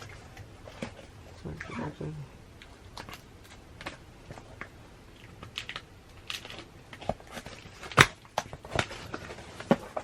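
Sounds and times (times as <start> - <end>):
packaging crinkling and clicking: 5.3 - 10.0.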